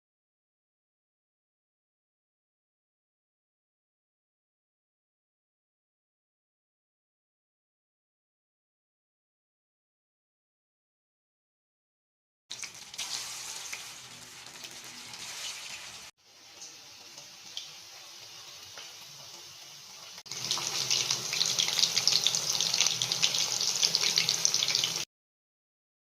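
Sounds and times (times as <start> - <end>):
food sizzling in hot oil: 12.5 - 25.1.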